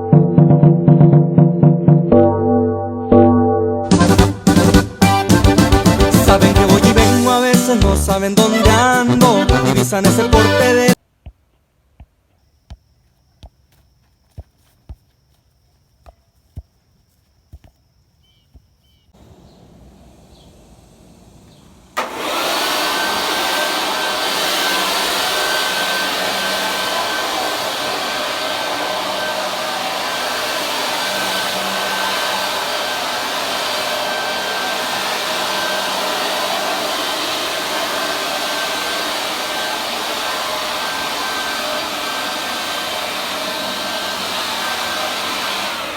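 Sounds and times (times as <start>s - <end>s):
blower motor whining: 19.2s - 45.9s.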